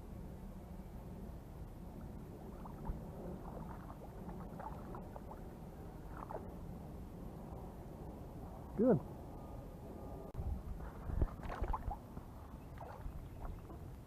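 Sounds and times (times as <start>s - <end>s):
low background rumble: 0.0s - 14.0s
water splashes and drips: 2.0s - 5.5s, 6.1s - 6.5s, 11.2s - 12.0s, 12.7s - 13.9s.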